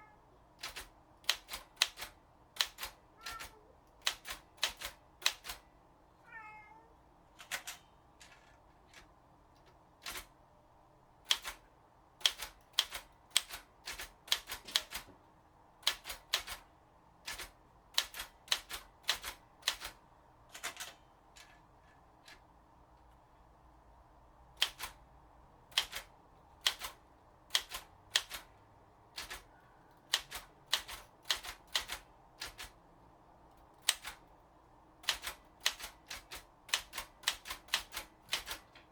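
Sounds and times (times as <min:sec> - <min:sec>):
cat meowing: 0:00.0 - 0:00.2, 0:03.2 - 0:03.8, 0:06.2 - 0:07.0
manual typewriter keystrikes: 0:00.6 - 0:05.6, 0:07.4 - 0:10.4, 0:11.2 - 0:11.6, 0:12.2 - 0:15.1, 0:15.8 - 0:21.6, 0:24.6 - 0:25.0, 0:25.7 - 0:28.5, 0:29.1 - 0:32.8, 0:33.8 - 0:34.3, 0:35.0 - 0:38.9.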